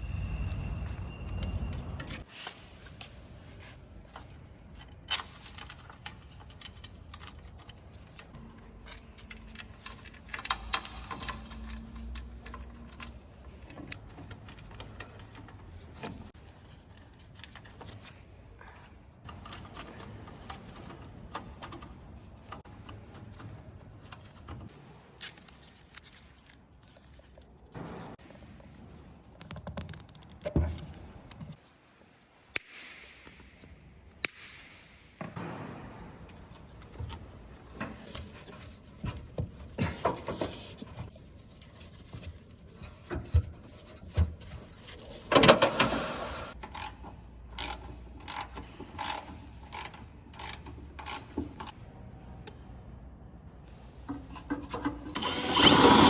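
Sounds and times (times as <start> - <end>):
hand tools and parts clinking: 0.0 - 2.9, 3.6 - 27.6.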